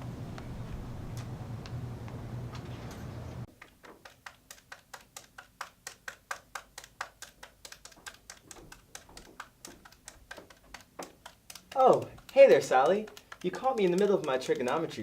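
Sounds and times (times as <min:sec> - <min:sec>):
low steady hum: 0:00.0 - 0:03.5
keyboard typing clicks: 0:06.8 - 0:15.0.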